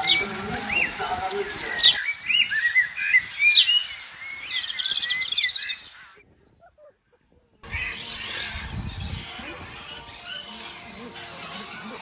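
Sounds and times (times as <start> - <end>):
birds calling: 0.0 - 12.0.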